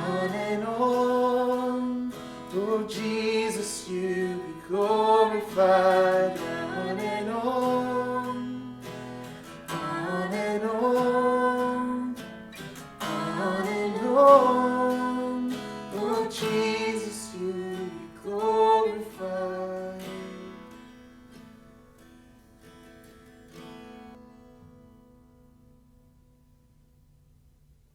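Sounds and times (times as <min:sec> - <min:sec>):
wordless singing: 0:00.0 - 0:20.5
acoustic guitar: 0:00.0 - 0:27.9.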